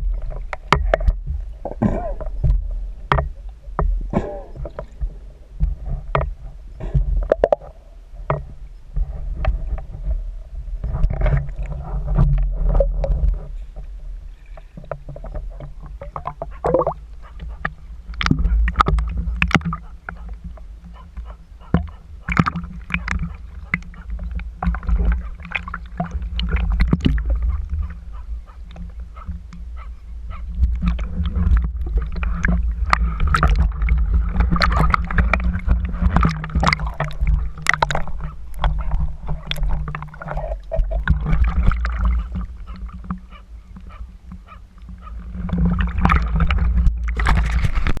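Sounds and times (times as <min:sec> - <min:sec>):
water sloshing and gurgling: 0:00.0 - 0:48.0
low rumble: 0:15.2 - 0:48.0.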